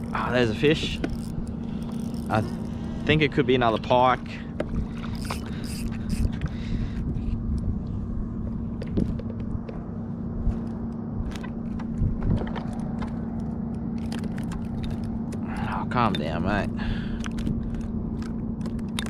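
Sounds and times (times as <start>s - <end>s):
fishing reel clicks and knocks: 0.0s - 2.8s, 4.6s - 6.5s
steady low rumble: 0.0s - 19.0s.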